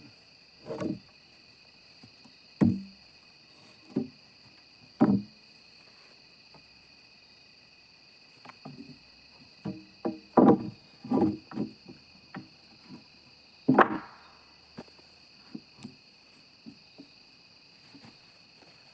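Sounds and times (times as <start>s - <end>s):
thuds and knocks: 0.6s - 1.0s, 2.6s - 3.0s, 3.6s - 4.2s, 5.0s - 5.3s, 9.6s - 13.0s, 13.7s - 16.0s.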